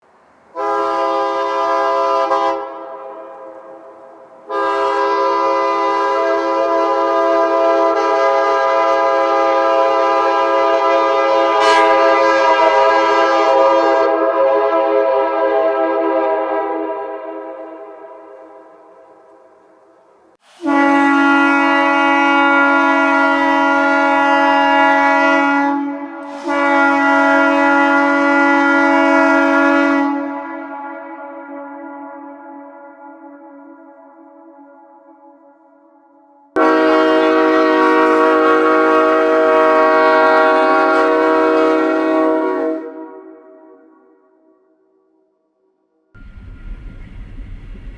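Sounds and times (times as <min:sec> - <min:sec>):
train horn blasts: 0:00.5 - 0:45.2, 0:46.2 - 0:47.9.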